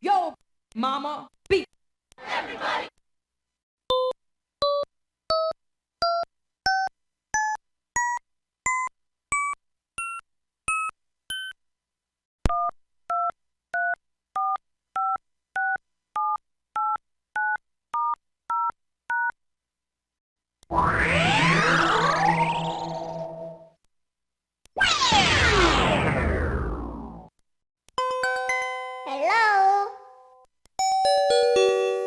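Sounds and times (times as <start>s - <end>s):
rising two-note beeps: 20.9s - 23.7s.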